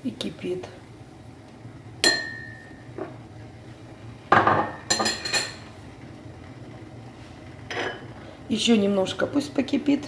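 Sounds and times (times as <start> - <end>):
kitchenware clinking: 2.0 - 3.1, 4.3 - 5.7, 7.7 - 8.1.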